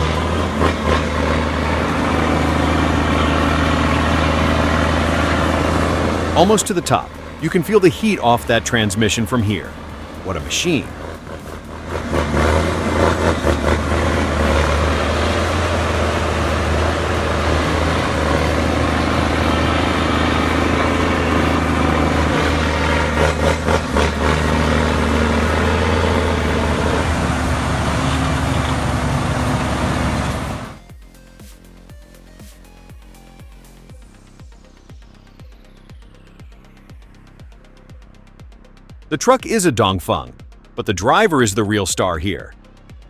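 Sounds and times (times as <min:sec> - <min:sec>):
engine knocks: 0:00.0 - 0:30.8
heavy truck engine droning: 0:00.0 - 0:30.9.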